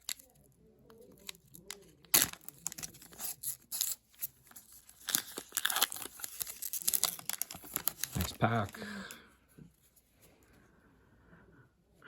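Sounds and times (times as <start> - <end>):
foil wrapper crinkling and tearing: 0.0 - 9.0.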